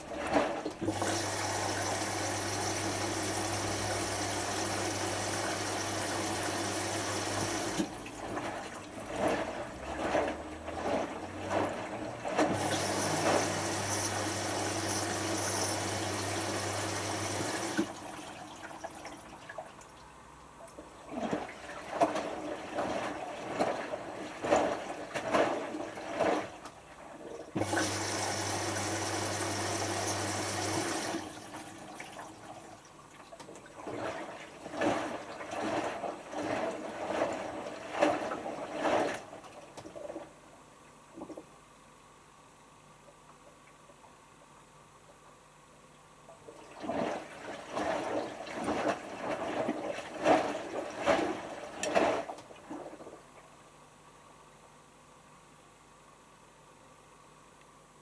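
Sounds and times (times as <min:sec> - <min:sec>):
water filling washing machine drum: 0:00.0 - 0:19.8, 0:21.0 - 0:40.1, 0:46.4 - 0:53.1
water sloshing in turning drum: 0:00.0 - 0:41.6, 0:46.2 - 0:53.6
low mains hum: 0:00.0 - 0:58.0.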